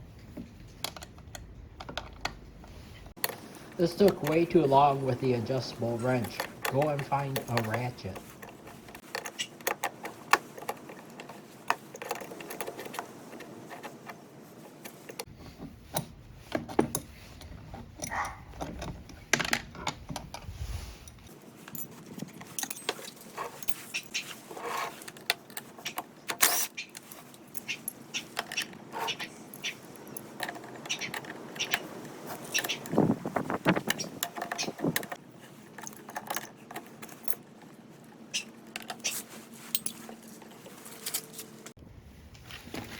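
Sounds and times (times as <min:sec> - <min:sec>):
metal tools clinking and rattling: 0:02.9 - 0:13.1, 0:16.6 - 0:20.4, 0:21.6 - 0:37.8, 0:38.4 - 0:41.6.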